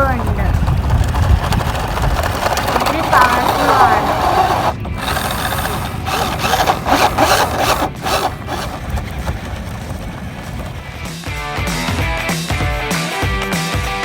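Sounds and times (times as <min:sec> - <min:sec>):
toy car electric motor and gears: 0:00.0 - 0:11.1
small wheels over the ground: 0:00.0 - 0:12.9
music: 0:11.0 - 0:14.0.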